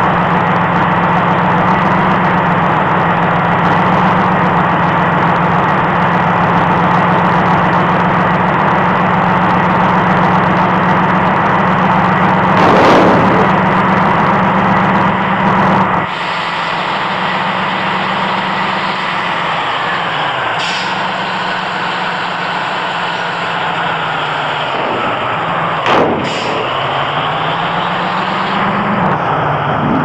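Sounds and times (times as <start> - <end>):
vehicle engine running: 0.0 - 30.0.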